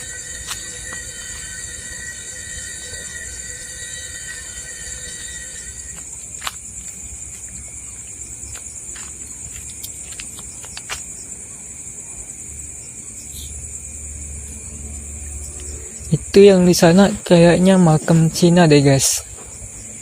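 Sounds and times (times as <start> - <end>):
crickets chirring: 0.0 - 20.0.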